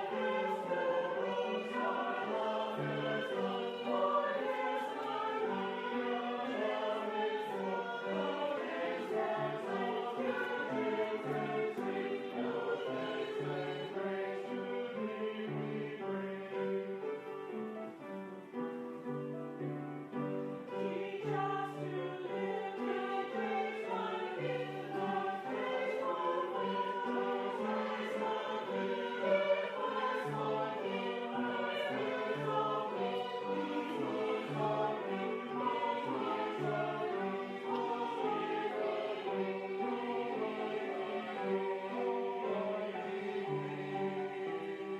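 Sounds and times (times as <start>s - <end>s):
choir singing held chords: 0.0s - 44.9s.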